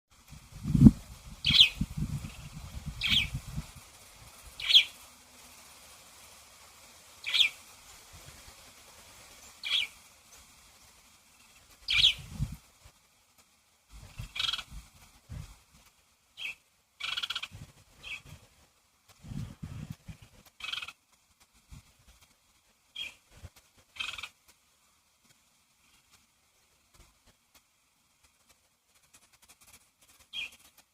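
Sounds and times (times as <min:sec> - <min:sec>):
bird chirping: 0:01.4 - 0:03.4, 0:04.6 - 0:05.0, 0:07.2 - 0:07.6, 0:09.4 - 0:10.0, 0:11.4 - 0:12.2, 0:16.4 - 0:18.3, 0:23.0 - 0:23.2, 0:24.0 - 0:24.3, 0:30.3 - 0:30.6.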